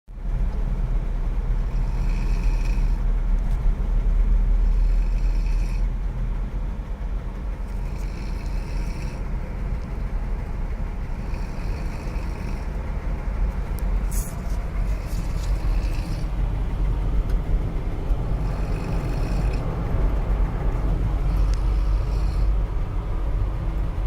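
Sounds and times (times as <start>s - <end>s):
low rumble of vehicle on road: 0.1s - 24.0s
person snoring: 1.6s - 3.0s, 4.6s - 5.9s, 7.6s - 9.3s, 11.0s - 12.8s, 14.8s - 16.3s, 18.4s - 19.6s, 21.2s - 22.6s.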